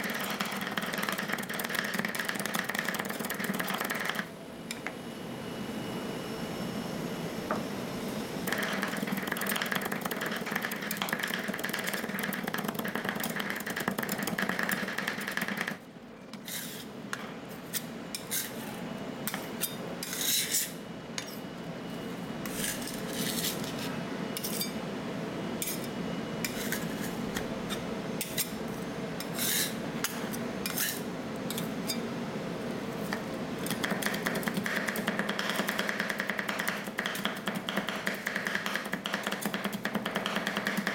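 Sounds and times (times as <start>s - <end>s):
spatulas scraping steel surface: 16.4s - 16.9s, 20.0s - 21.4s, 25.6s - 27.2s, 30.6s - 31.0s
metal spatulas tapping and chopping: 33.6s - 40.9s.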